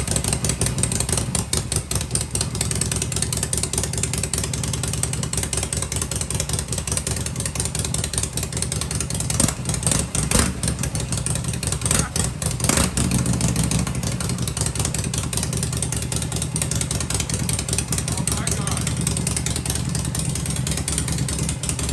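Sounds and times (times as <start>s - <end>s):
motorcycle engine running: 0.0s - 21.9s
engine throttle blips: 9.2s - 21.9s.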